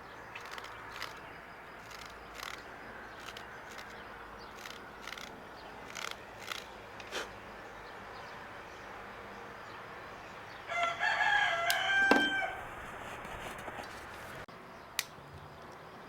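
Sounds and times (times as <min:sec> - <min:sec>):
knife blade shaving wood: 0:00.4 - 0:01.2, 0:01.8 - 0:04.0, 0:04.6 - 0:07.3, 0:12.3 - 0:14.5.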